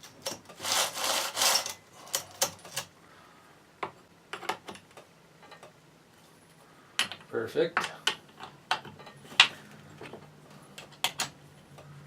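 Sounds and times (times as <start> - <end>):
metal scraping: 0.0 - 2.9.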